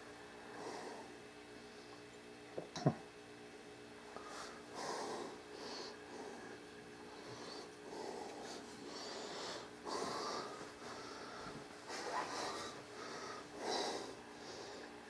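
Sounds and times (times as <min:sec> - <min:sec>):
man breathing close to microphone: 0:04.1 - 0:15.0.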